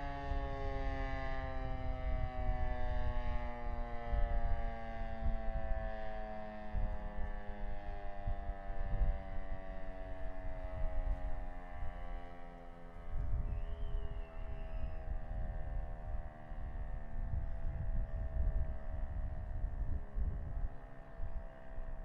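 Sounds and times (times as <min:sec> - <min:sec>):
warning siren winding down: 0:00.0 - 0:22.0.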